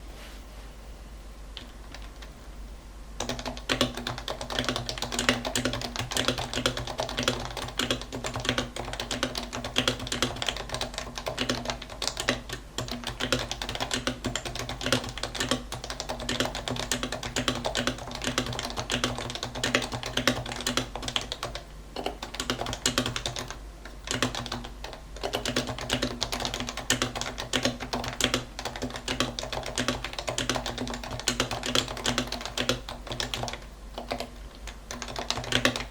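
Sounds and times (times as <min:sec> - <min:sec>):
fast keyboard typing: 0:01.6 - 0:02.3, 0:03.2 - 0:35.9.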